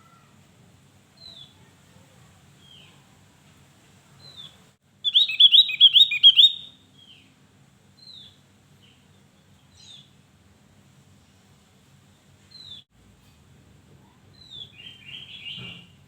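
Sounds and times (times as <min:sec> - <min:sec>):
thin down-slurred bird calls: 0:04.2 - 0:07.3, 0:14.3 - 0:16.0
bird whistled song phrase: 0:05.1 - 0:06.8.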